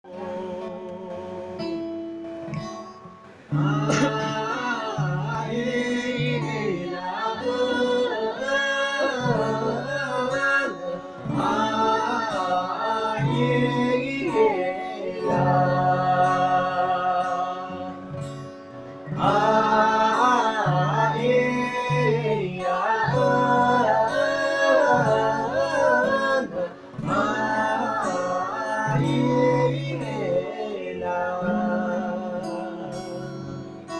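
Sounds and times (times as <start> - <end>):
person singing a ballad: 0.0 - 33.9
plucked string accompaniment: 0.0 - 33.9.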